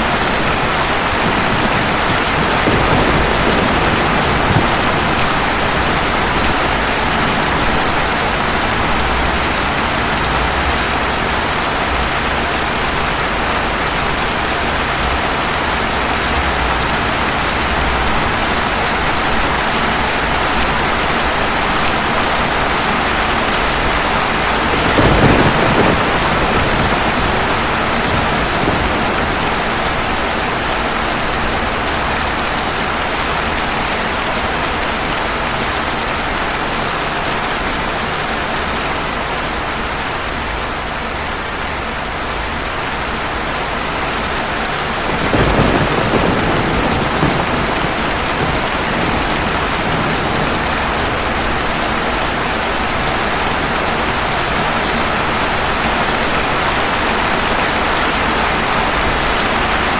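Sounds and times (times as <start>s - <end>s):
thunder rolling: 0.0s - 19.5s, 22.1s - 32.7s, 44.9s - 56.2s
heavy rain falling: 0.0s - 59.9s.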